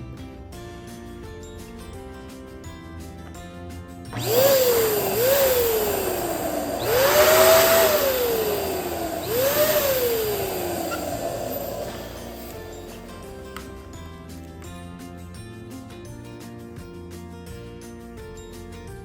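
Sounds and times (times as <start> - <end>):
background music: 0.0 - 19.0
balloon inflator motor whine: 4.1 - 13.8.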